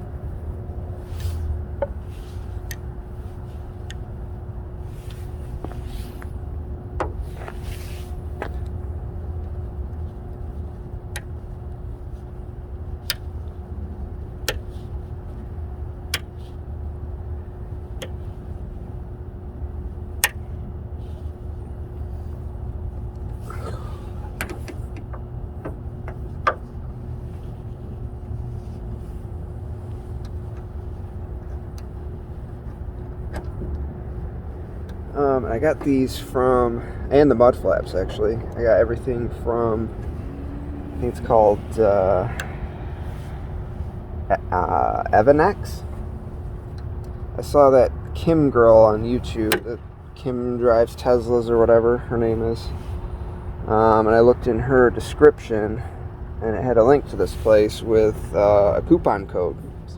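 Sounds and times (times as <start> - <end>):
steady low rumble: 0.0 - 59.9
short rustles: 4.8 - 6.4, 7.2 - 8.6.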